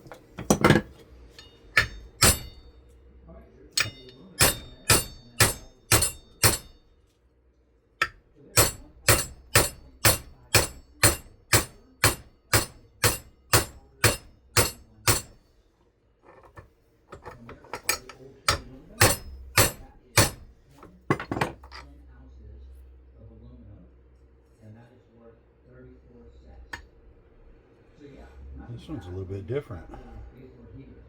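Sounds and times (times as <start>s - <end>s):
hammer striking metal: 0.0s - 2.8s, 3.7s - 6.8s, 8.0s - 15.4s, 17.2s - 20.5s.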